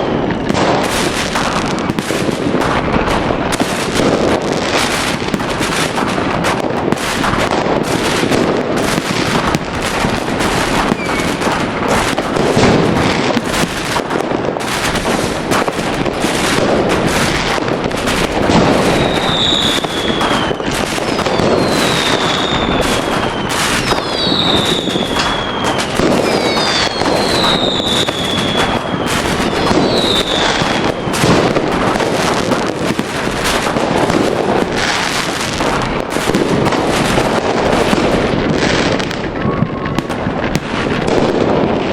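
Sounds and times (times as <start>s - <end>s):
fireworks bangs and crackling: 0.0s - 41.9s
falling firework whistles: 8.8s - 14.0s, 18.1s - 36.4s.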